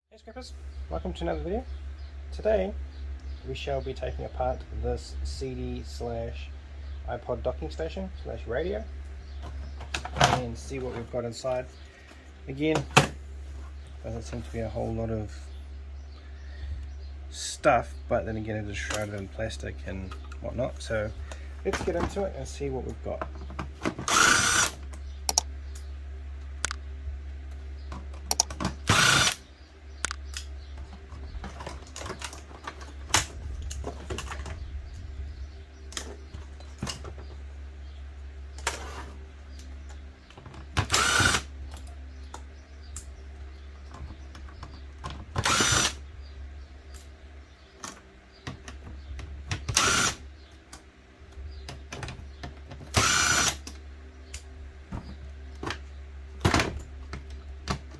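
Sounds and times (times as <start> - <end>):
plastic parts and screws rattling: 9.4 - 13.2, 20.1 - 25.4, 30.8 - 35.1, 35.9 - 37.5
power drill-driver bursts: 24.0 - 24.8, 28.8 - 29.4, 40.8 - 41.5, 45.4 - 46.0, 49.7 - 50.2, 52.9 - 53.6.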